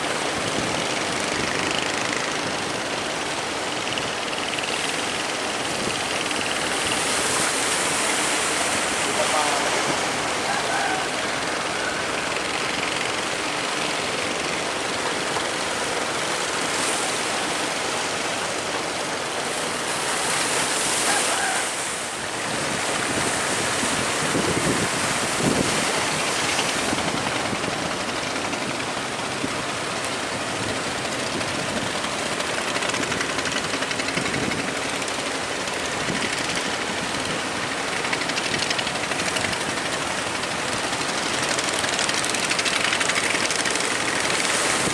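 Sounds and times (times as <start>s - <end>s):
wind and heavy sea: 0.0s - 44.9s
wind buffeting microphone: 22.1s - 35.1s.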